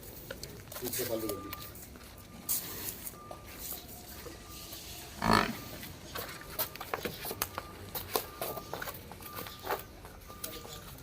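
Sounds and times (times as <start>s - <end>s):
water buffalo vocalizing: 5.1s - 5.8s.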